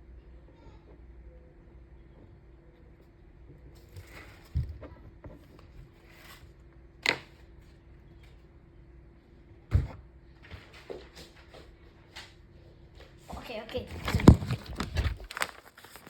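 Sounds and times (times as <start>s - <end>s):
faint steady hum: 0.0s - 16.0s
knocks and thumps: 9.7s - 10.0s.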